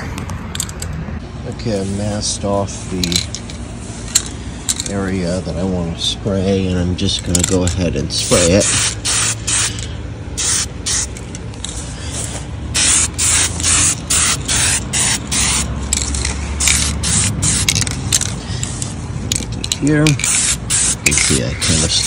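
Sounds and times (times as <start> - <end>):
spray paint hissing: 7.3 - 22.0.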